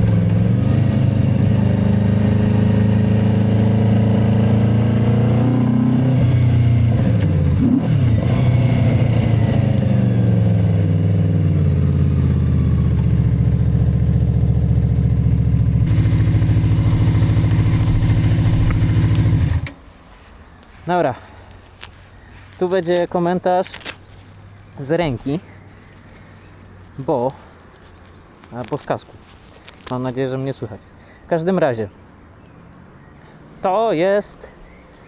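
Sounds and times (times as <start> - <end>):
motorcycle engine running: 0.0 - 19.9.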